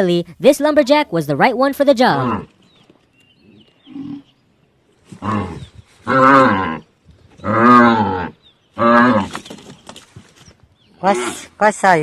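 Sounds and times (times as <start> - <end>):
cow bellowing: 5.1 - 9.4.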